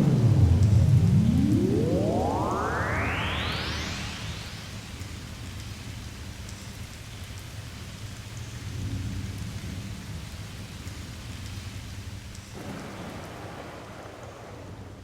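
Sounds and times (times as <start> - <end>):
rolling thunder: 0.0 - 4.0, 12.6 - 15.0
steady rain: 0.0 - 15.0.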